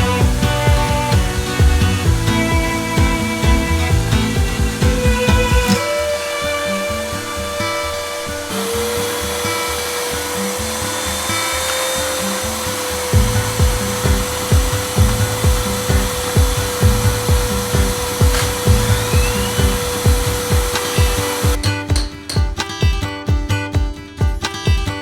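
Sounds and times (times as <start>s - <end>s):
repeating bass figure: 0.0s - 6.0s, 13.1s - 21.6s
held synth note: 0.0s - 21.6s
steady drum beat: 0.0s - 25.0s.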